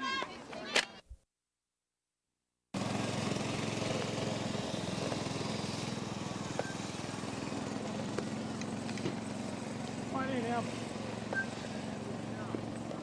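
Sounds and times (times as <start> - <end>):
steady engine drone: 2.8 - 13.0.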